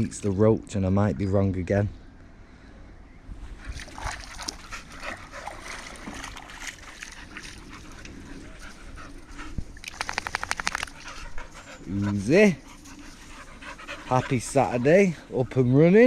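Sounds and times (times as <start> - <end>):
quick rapid rattle: 9.9 - 11.0.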